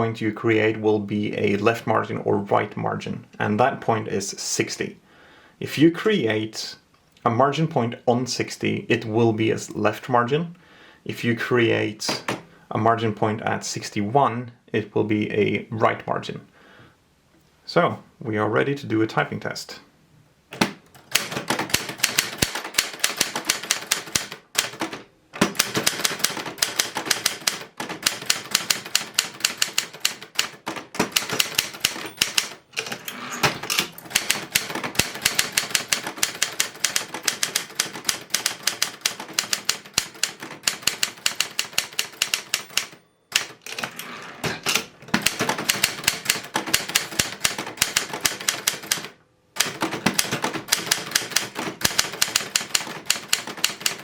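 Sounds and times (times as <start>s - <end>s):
typewriter keystroke clacks: 20.6s - 33.0s, 33.6s - 43.9s, 44.6s - 54.0s.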